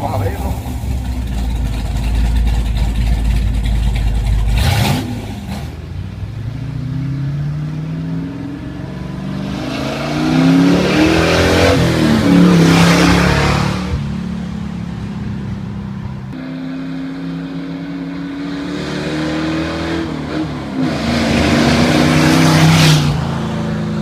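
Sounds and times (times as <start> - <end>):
pickup engine rumbling and revving: 0.0 - 24.0.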